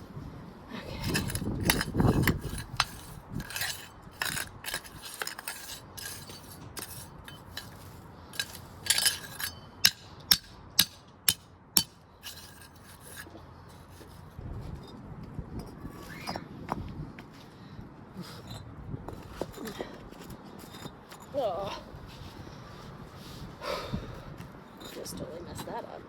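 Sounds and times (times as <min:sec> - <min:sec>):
pavers scraping and clinking: 0:01.0 - 0:15.0, 0:18.2 - 0:21.6, 0:24.7 - 0:26.0.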